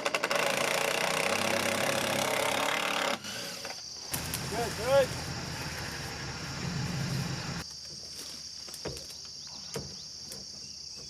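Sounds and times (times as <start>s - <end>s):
insects chorus: 0.3s - 11.0s
low engine rumble: 4.2s - 7.6s.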